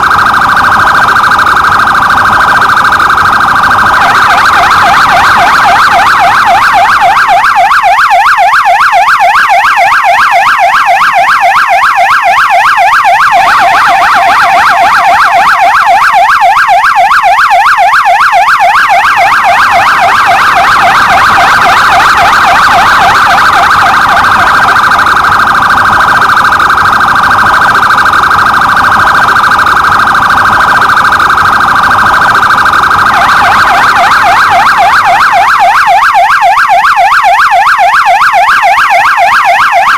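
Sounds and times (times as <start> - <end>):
police siren warble: 0.0 - 39.9.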